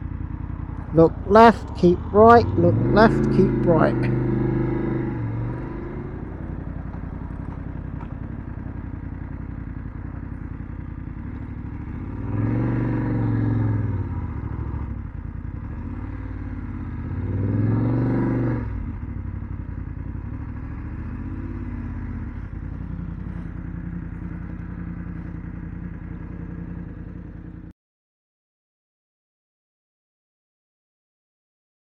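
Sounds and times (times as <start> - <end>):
motorcycle engine running: 0.0 - 27.7.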